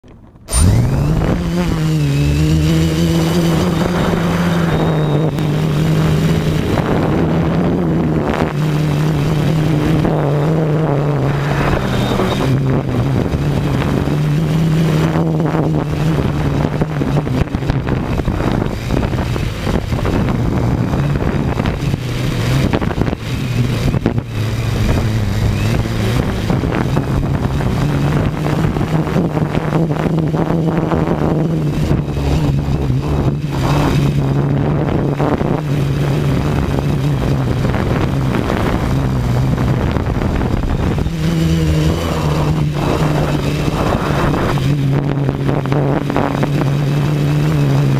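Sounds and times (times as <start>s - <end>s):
motor running: 0.4s - 7.2s, 9.4s - 13.9s.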